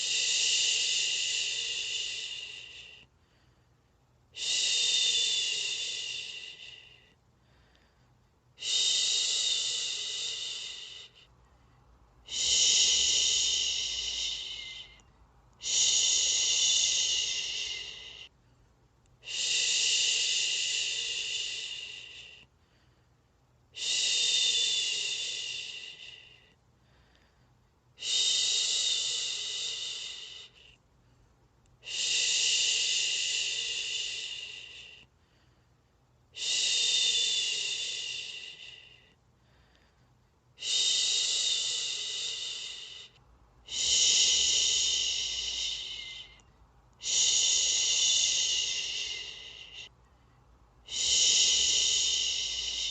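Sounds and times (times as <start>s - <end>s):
person shushing: 12.3s - 15.0s, 15.6s - 18.3s, 43.7s - 46.4s, 47.0s - 49.9s, 50.9s - 52.9s.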